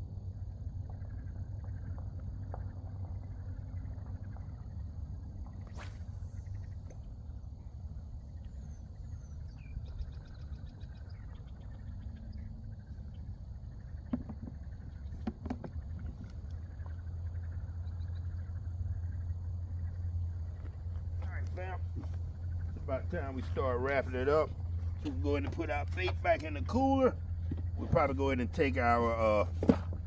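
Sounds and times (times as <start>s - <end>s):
faint insect chirping: 0.0s - 30.0s
steady low rumble: 15.7s - 30.0s.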